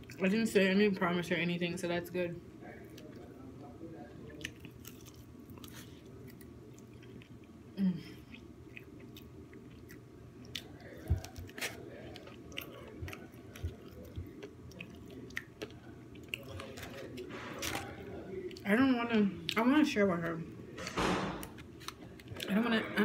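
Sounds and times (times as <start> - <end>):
person chewing food: 4.0 - 18.7, 20.8 - 22.5.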